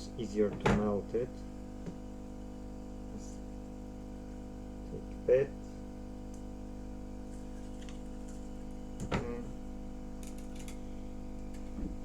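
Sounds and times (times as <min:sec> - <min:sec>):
small tools clicking: 0:10.2 - 0:10.8.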